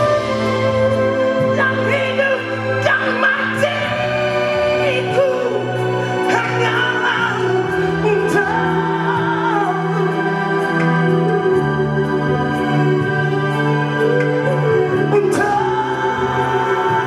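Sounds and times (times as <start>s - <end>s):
band playing: 0.0s - 17.0s.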